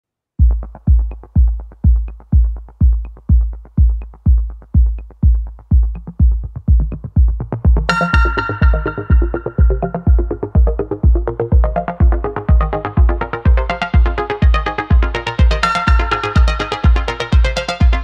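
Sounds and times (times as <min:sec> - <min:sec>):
kick drum beat: 0:00.4 - 0:18.0
synth chords: 0:00.4 - 0:18.0.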